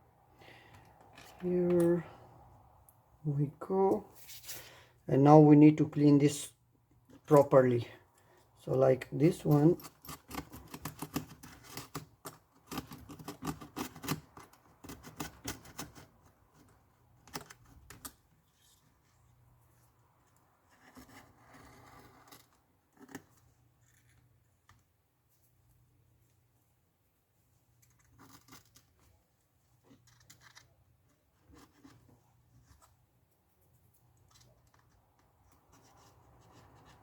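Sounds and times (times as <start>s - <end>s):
scratching and clicking on glass: 9.8s - 18.2s.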